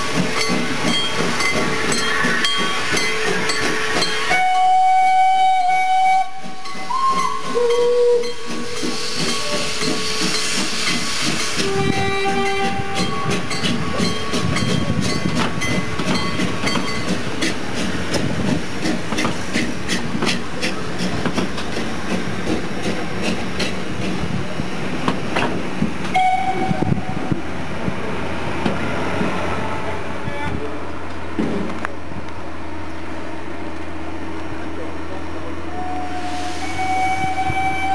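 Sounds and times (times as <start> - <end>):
wheels clattering on rail joints: 0.0 - 4.7, 5.6 - 29.5
steam hissing: 0.0 - 28.2, 35.8 - 37.9
steam locomotive whistle: 1.4 - 16.1, 26.1 - 27.3, 35.7 - 37.9.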